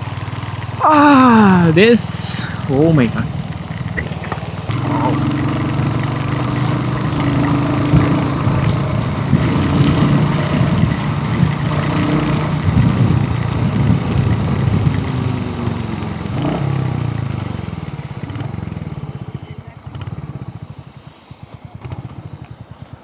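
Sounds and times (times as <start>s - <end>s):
steady rushing noise: 0.0s - 16.1s
motorcycle engine running: 0.0s - 23.0s.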